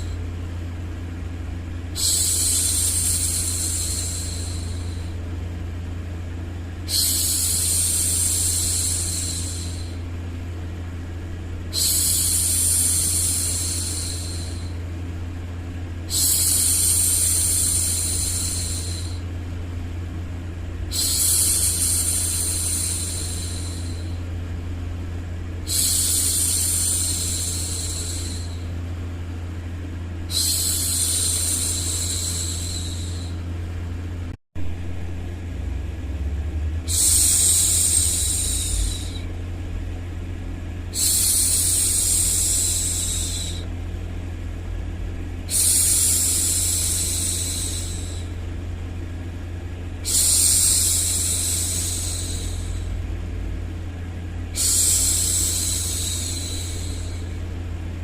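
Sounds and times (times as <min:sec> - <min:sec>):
low white-noise rumble: 0:00.0 - 0:58.0
woman shushing: 0:30.3 - 0:33.4, 0:50.0 - 0:52.9, 0:54.6 - 0:57.3.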